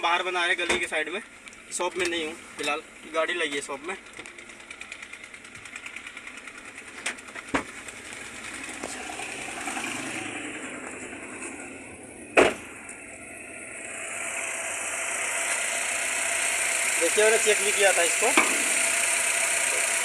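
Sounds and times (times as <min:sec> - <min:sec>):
car engine idling with misfire: 0:00.0 - 0:20.0
sharp loud clunk: 0:12.4 - 0:12.8, 0:18.4 - 0:18.7.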